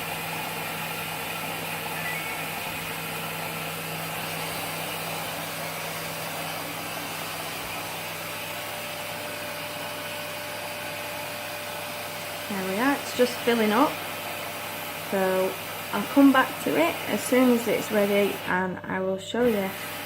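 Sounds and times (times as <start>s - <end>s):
faint high tone: 2.0s - 2.6s.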